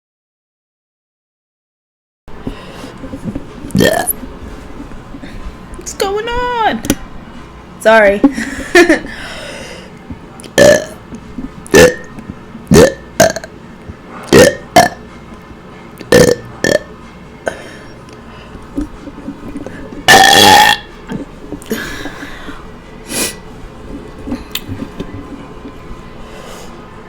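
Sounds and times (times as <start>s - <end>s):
woman burping: 3.7s - 4.2s, 10.6s - 11.0s, 11.7s - 12.1s, 12.7s - 13.5s, 14.3s - 15.0s, 16.1s - 17.8s, 20.1s - 22.1s.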